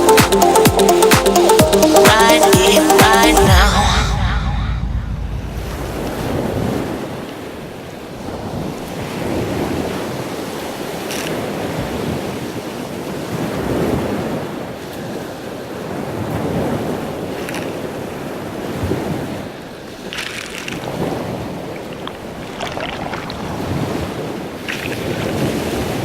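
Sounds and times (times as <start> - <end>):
wind buffeting microphone: 4.0 - 8.8
sea water surging: 20.8 - 26.0.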